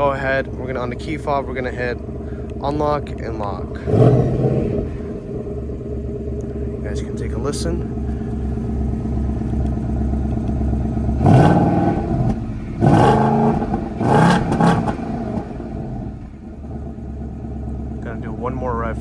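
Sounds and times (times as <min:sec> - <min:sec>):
car engine idling and revving: 0:00.0 - 0:19.0.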